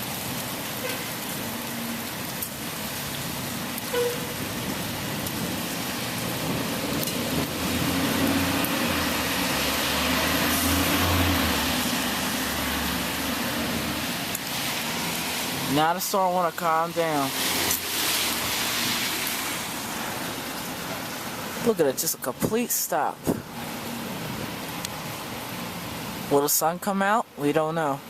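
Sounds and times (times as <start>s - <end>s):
vehicle passing on wet road: 0.0s - 22.2s
rain falling on ground: 0.0s - 28.0s.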